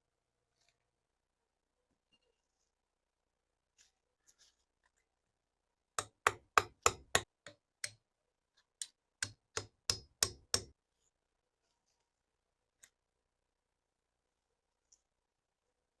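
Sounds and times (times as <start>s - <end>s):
hammer tapping: 6.0s - 8.0s, 8.8s - 10.7s.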